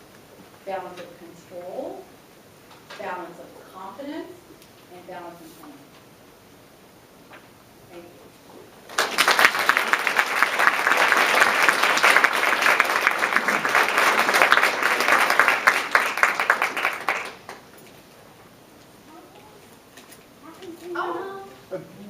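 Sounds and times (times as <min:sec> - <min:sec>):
audience applauding: 0:08.9 - 0:17.8.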